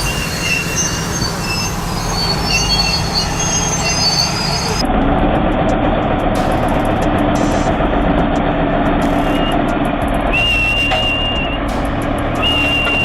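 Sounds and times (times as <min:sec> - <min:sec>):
high-pitched metallic squeals: 0:00.0 - 0:04.8, 0:09.0 - 0:13.0
bulldozer engine rumbling: 0:00.0 - 0:13.0.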